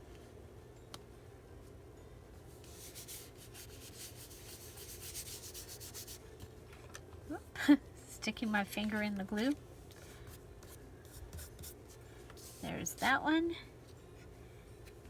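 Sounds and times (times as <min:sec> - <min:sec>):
rubbing strokes on paper: 0:02.6 - 0:06.3, 0:10.1 - 0:12.8.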